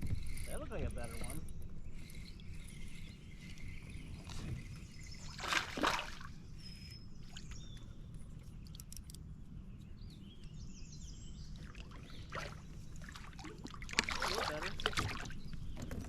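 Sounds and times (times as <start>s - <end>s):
birds chirping faintly: 0.0s - 16.0s
low wind rumble: 0.0s - 16.0s
water splashing beside kayak: 5.2s - 6.4s, 11.6s - 16.0s.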